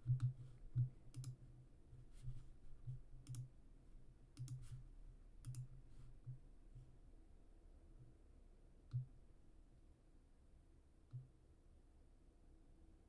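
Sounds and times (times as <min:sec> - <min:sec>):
computer mouse and key clicks: 0:00.0 - 0:01.4, 0:02.9 - 0:03.5, 0:04.4 - 0:04.8, 0:05.4 - 0:06.4.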